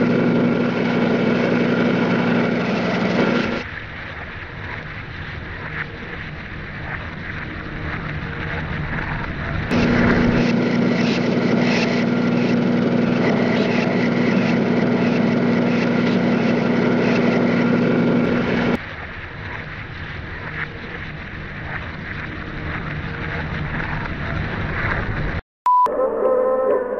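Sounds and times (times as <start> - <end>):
machine drone humming: 0.0 - 3.7, 5.6 - 25.4.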